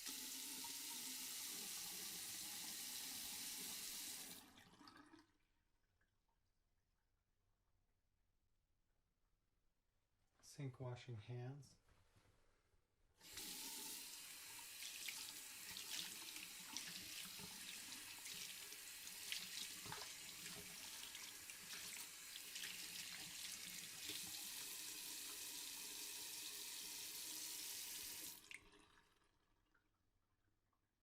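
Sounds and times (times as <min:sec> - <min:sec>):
tap water running into sink: 0:00.0 - 0:05.3, 0:13.2 - 0:29.2
hand washing splashes: 0:13.2 - 0:24.6.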